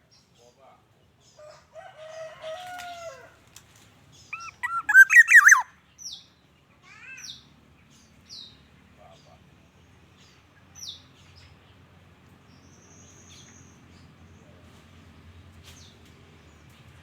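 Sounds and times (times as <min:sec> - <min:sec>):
bird fluty whistles: 0:04.4 - 0:05.6
high downward-sliding bird calls: 0:04.4 - 0:05.7
low drawn-out bird call: 0:04.4 - 0:05.7.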